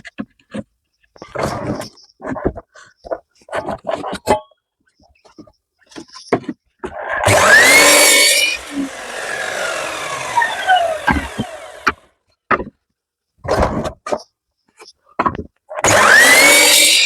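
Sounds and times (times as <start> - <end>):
power saw whining and cutting wood: 7.1 - 12.1, 15.8 - 17.0.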